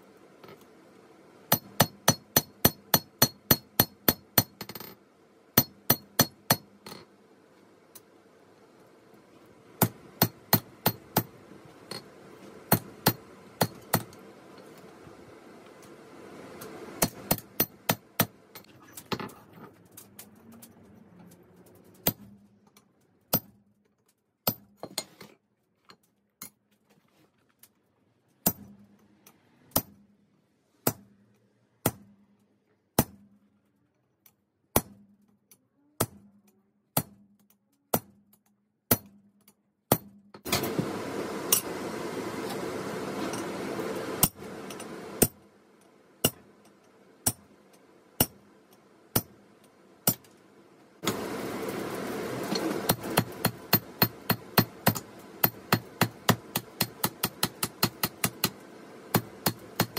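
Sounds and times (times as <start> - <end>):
hammer striking steel on anvil: 1.5 - 4.7, 5.6 - 6.7, 12.7 - 14.2, 47.2 - 47.5, 49.1 - 49.4, 52.6 - 59.9
steady low hum: 40.5 - 59.9.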